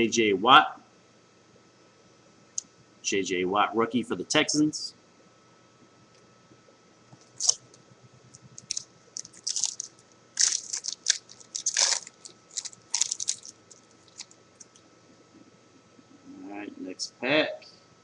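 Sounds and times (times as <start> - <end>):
foil wrappers crinkling: 7.2 - 7.7, 8.6 - 14.8
cards being handled: 7.2 - 7.8, 8.5 - 14.8.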